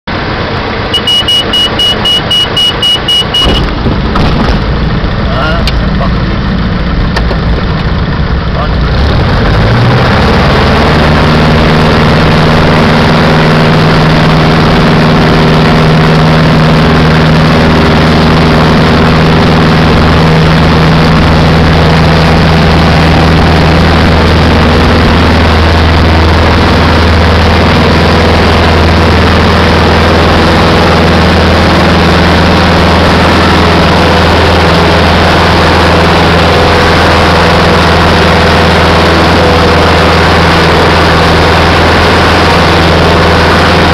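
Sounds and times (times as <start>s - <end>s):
aircraft engine and propeller: 0.1s - 43.9s.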